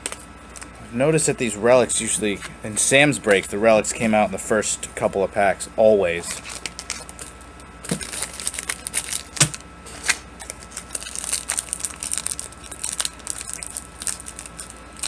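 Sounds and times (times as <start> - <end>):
foil wrapper crinkling: 6.2 - 15.0
foil wrapper snapping: 6.3 - 15.0.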